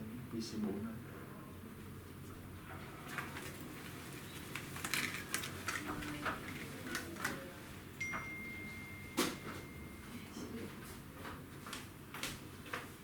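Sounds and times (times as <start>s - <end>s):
small hard parts clicking: 4.5s - 7.4s
thin steady high tone: 8.0s - 10.7s.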